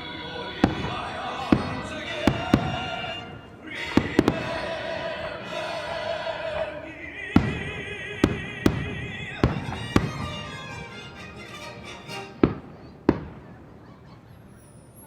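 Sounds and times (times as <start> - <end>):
fireworks bangs: 0.0 - 14.5.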